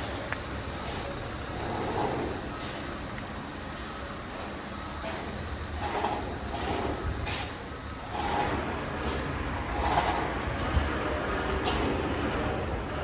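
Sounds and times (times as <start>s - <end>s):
traffic rumble: 0.0s - 13.0s.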